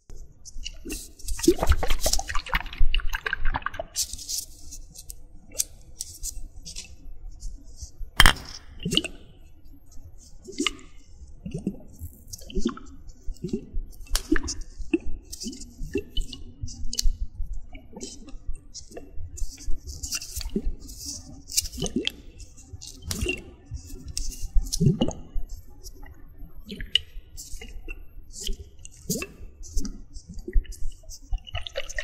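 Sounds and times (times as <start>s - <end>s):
wet squishes: 0.6s - 6.9s, 10.6s - 15.6s.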